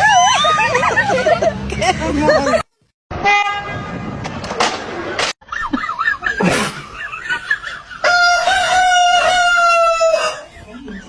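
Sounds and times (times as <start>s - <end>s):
laughter: 0.0s - 2.7s, 5.1s - 8.1s, 10.5s - 11.0s
rooster crowing: 8.0s - 10.5s
voices: 10.4s - 11.0s.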